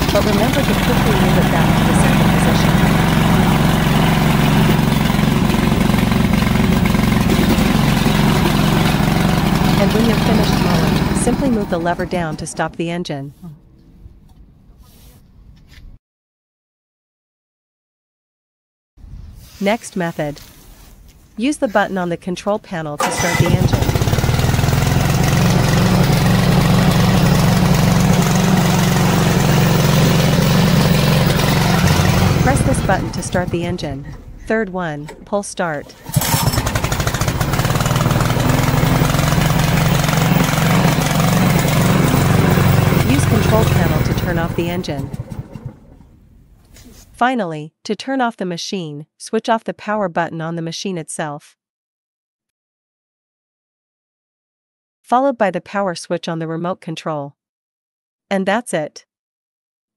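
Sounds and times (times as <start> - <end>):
mower gasoline engine running: 0.0 - 12.7, 23.0 - 46.2.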